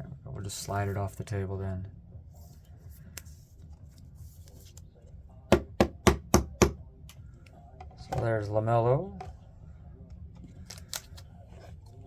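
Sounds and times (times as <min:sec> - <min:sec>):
sharp knocks on hard surface: 0:05.5 - 0:06.8.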